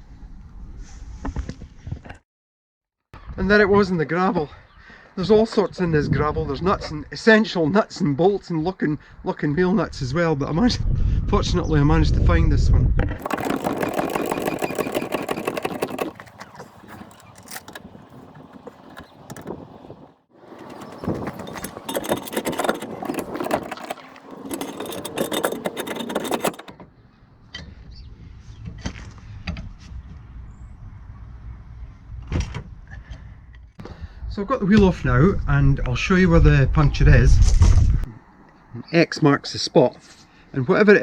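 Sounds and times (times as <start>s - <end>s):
hand tools clicking on metal: 13.2s - 26.8s.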